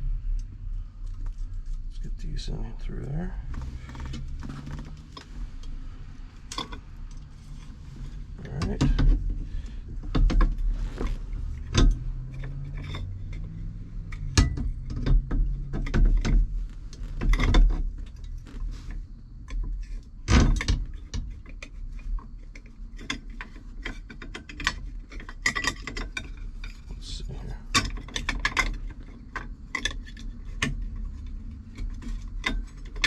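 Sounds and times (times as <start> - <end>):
low hum: 0.0 - 19.5
tools clicking and knocking: 11.6 - 16.5, 19.5 - 26.9, 27.7 - 33.0.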